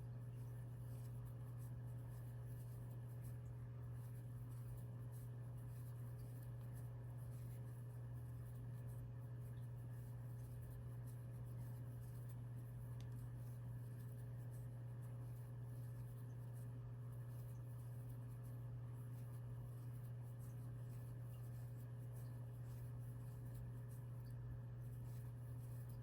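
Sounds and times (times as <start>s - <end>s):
faint low hum: 0.0s - 26.0s
crochet hook scratching yarn: 0.8s - 9.1s.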